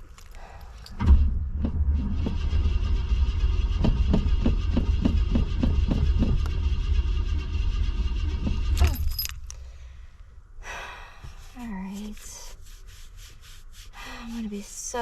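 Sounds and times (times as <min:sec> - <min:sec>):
car engine cranking: 0:00.0 - 0:10.4.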